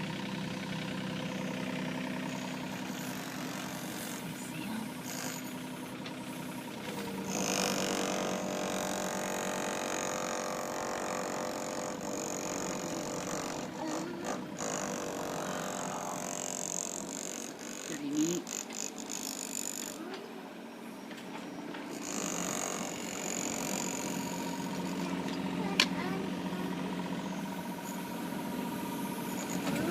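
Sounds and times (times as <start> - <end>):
diesel engine running: 0.0 - 29.9.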